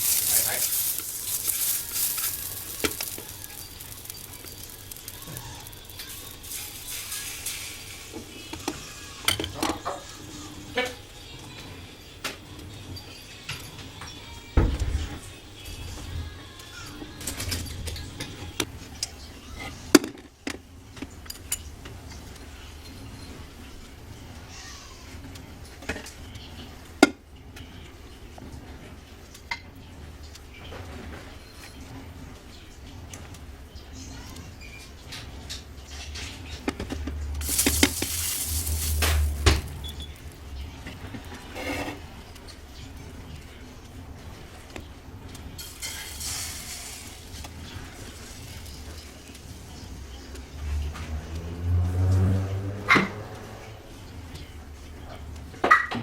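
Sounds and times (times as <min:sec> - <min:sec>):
hissing: 0:00.0 - 0:08.6
kitchen utensils and dishes clinking: 0:00.0 - 0:10.1, 0:37.4 - 0:40.8, 0:45.6 - 0:49.1.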